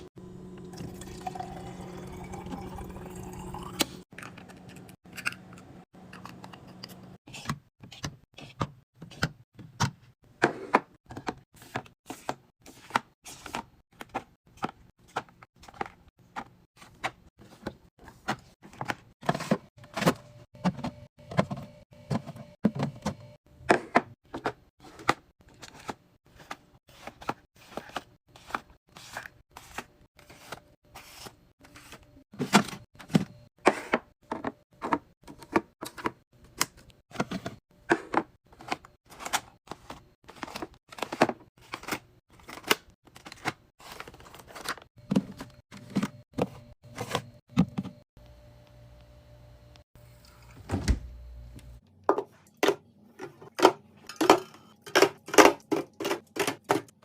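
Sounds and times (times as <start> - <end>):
items set down in fridge: 14.1 - 26.6, 50.5 - 51.3.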